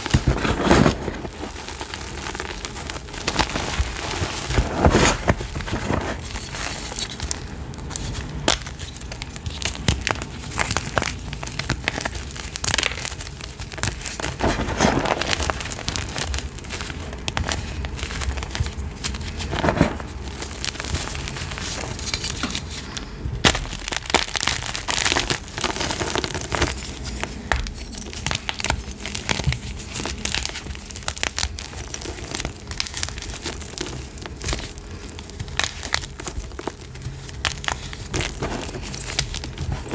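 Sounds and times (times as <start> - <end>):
chalk crunching: 0.0 - 7.2, 23.6 - 39.9.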